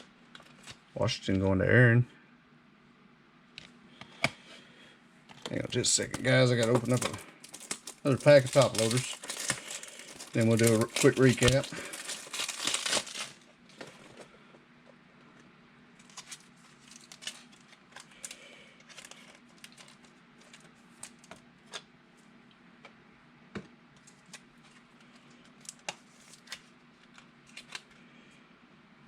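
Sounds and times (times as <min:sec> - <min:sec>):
faint steady hum: 0:00.0 - 0:29.0
cards and plastic cases clicking: 0:05.3 - 0:13.4.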